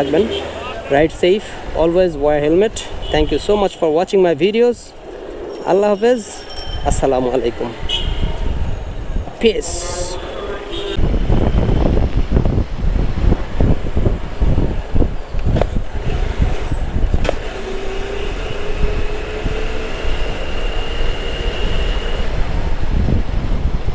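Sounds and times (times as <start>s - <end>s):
vehicle engine tone: 0.0s - 1.8s, 4.9s - 9.3s, 15.8s - 22.6s
road traffic noise: 0.0s - 23.9s
wind buffeting microphone: 0.0s - 23.9s.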